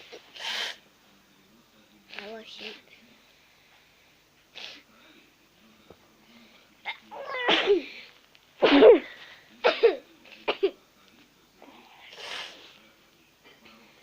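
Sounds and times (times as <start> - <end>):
child sneezing: 6.9 - 8.0, 8.6 - 10.7.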